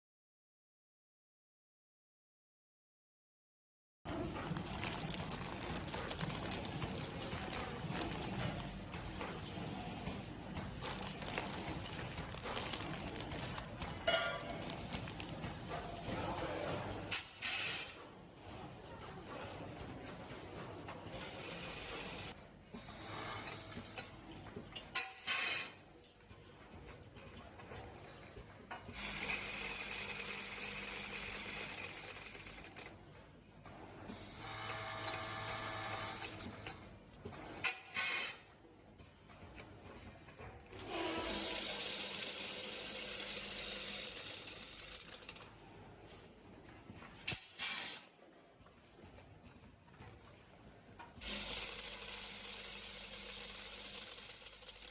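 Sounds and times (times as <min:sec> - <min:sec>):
packing machine clattering: 0:04.1 - 0:17.2.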